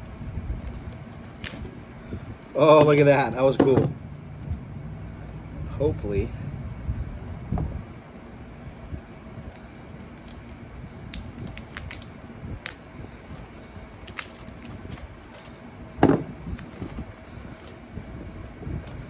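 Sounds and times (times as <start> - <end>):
faint steady hum: 0.0 - 19.0
loud knock: 16.0 - 16.3.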